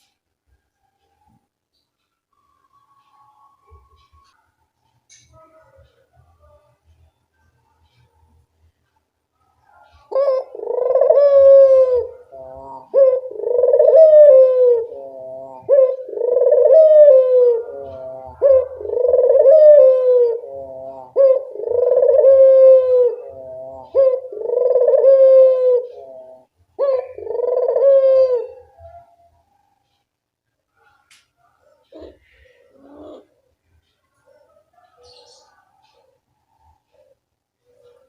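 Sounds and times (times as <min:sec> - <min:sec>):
dove cooing: 0:09.4 - 0:30.0, 0:30.7 - 0:38.0.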